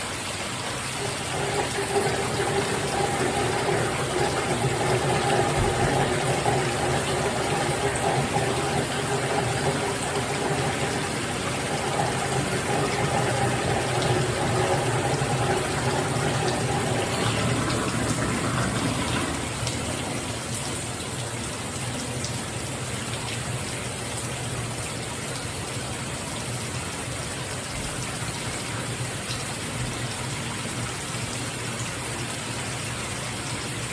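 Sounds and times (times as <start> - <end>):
shower water spraying: 0.0 - 21.8.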